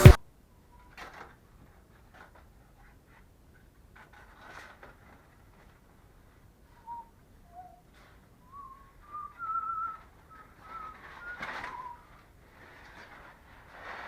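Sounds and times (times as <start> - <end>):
whistled notes: 8.4 - 12.1.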